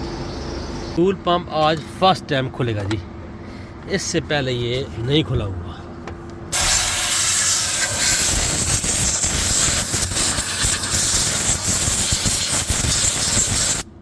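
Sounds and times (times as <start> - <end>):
compressed air blow gun hissing: 6.5 - 13.9.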